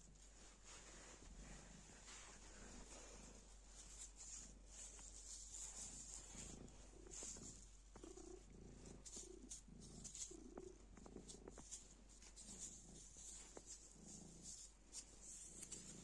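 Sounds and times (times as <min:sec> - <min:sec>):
cat purring: 0:00.0 - 0:16.0.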